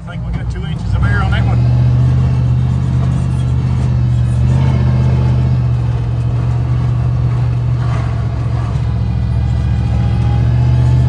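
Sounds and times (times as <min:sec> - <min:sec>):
car engine and road drone: 0:00.0 - 0:11.0.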